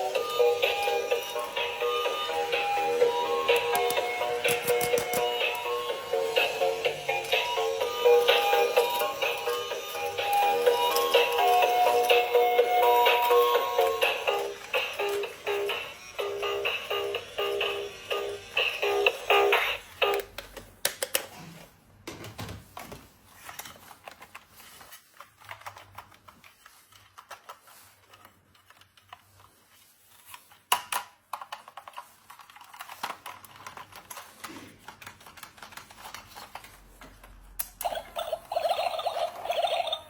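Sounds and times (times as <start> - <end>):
plastic toy pieces clicking: 3.5 - 5.6, 30.7 - 36.7.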